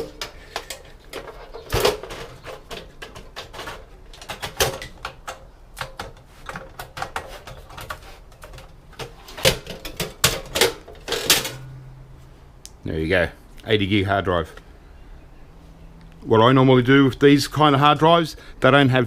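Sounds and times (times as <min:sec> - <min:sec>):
computer parts clicking and clattering: 0:00.0 - 0:11.7.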